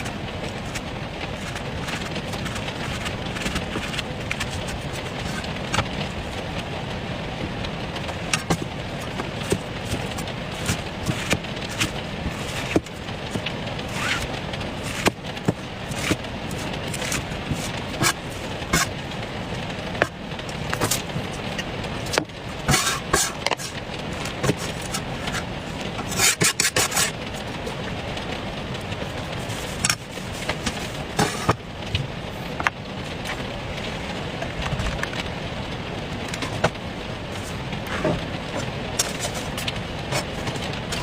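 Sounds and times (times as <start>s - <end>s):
steady background noise: 0.0s - 41.0s
knife cutting watermelon: 8.3s - 18.9s.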